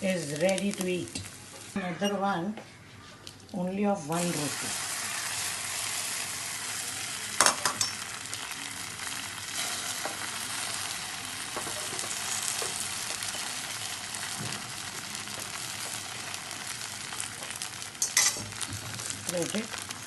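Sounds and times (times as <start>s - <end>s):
oil sizzling in a pan: 4.1s - 20.0s.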